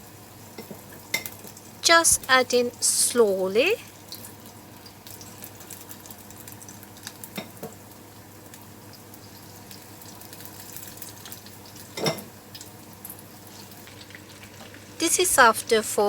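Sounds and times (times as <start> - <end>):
oil sizzling: 0.0 - 16.0
small pops in frying oil: 0.5 - 1.7, 4.0 - 14.9.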